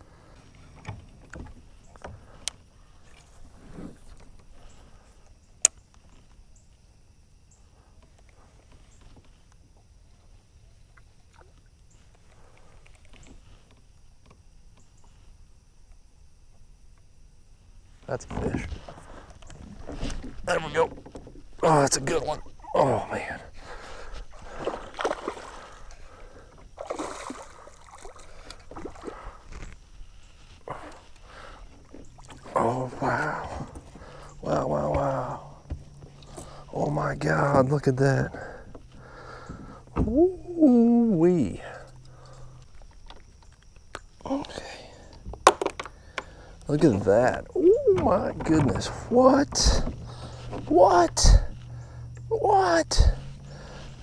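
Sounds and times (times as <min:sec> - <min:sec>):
water splashing: 0:24.3 - 0:25.9, 0:26.8 - 0:29.4
light knocks on kayak: 0:45.3 - 0:45.9.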